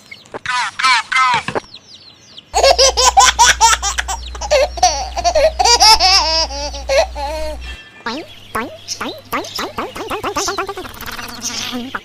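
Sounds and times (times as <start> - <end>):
high-pitched giggling laughter: 2.6 - 7.7, 8.6 - 12.0.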